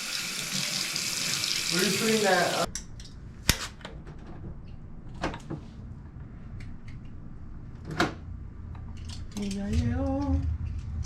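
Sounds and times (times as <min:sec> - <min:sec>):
low steady rumble: 0:05.8 - 0:11.0.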